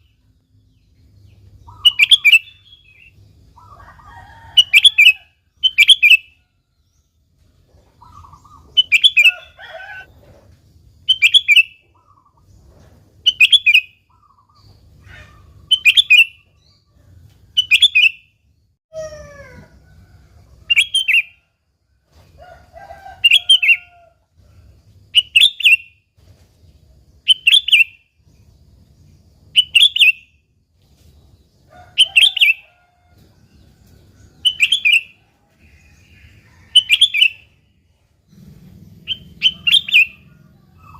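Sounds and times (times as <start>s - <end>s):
fainter lower bird calls: 1.3s - 7.0s, 7.8s - 10.1s, 11.0s - 18.3s, 27.2s - 28.5s, 29.5s - 30.4s, 31.7s - 40.9s
bulbul calling: 1.6s - 3.8s, 8.0s - 9.6s, 34.4s - 35.2s, 38.3s - 40.9s.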